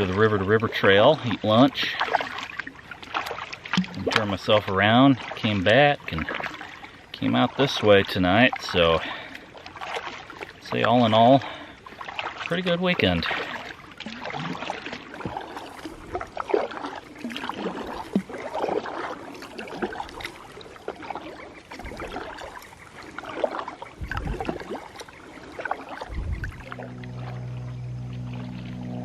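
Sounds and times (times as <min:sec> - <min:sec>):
paddle splashing in water: 0:00.0 - 0:29.0
background music low notes: 0:26.6 - 0:29.0.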